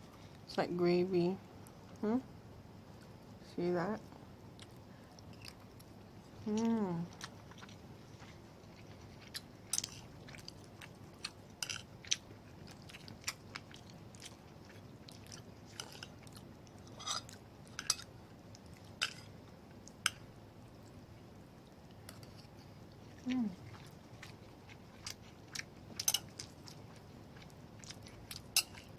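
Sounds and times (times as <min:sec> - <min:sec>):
chewing and biting food: 0:07.1 - 0:20.0, 0:21.8 - 0:28.9.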